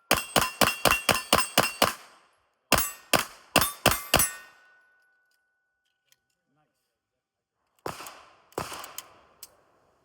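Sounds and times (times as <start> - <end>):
pistol shots: 0.1 - 2.1, 2.7 - 4.4, 7.8 - 9.2.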